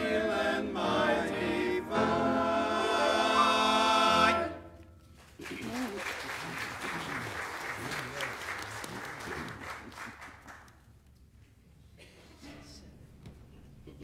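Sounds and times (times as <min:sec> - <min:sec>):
congregation applauding: 0:05.1 - 0:11.0.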